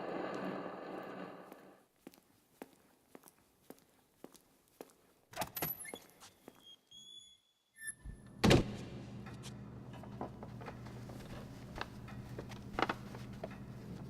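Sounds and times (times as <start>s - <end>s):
steady low hum: 0.0s - 1.8s, 8.1s - 14.0s
door shutting with a thunk: 8.4s - 8.9s.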